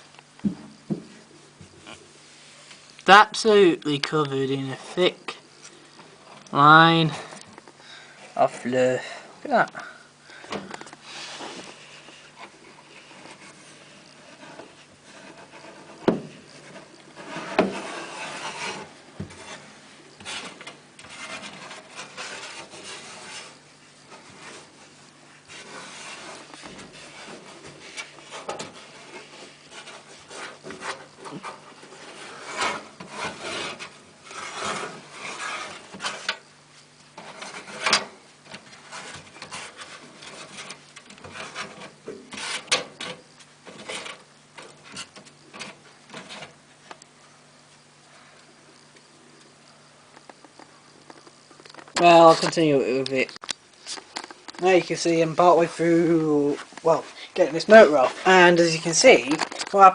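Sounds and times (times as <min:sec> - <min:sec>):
scraping and rubbing of tools: 0:10.7 - 0:46.8.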